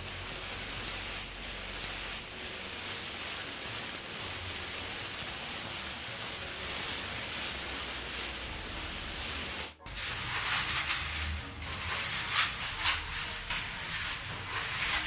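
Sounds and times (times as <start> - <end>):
rain-like hiss: 0.0 - 9.8.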